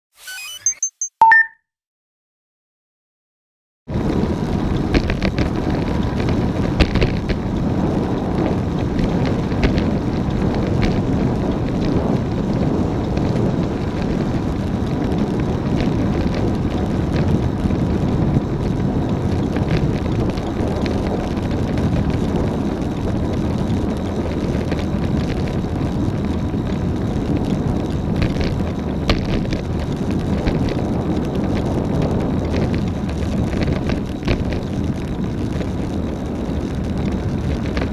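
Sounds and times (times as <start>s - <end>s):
wind and road noise: 3.9s - 37.9s
bicycle wheels clicking: 4.0s - 37.9s.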